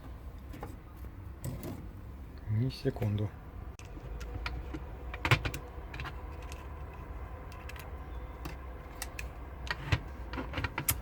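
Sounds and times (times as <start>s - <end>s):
plastic parts clicking and knocking: 3.8s - 11.0s.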